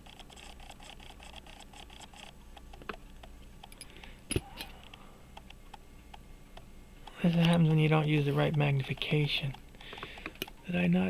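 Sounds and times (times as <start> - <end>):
faint rapid watch ticking: 0.0 - 11.0
metallic tool clicks and taps: 8.5 - 10.6.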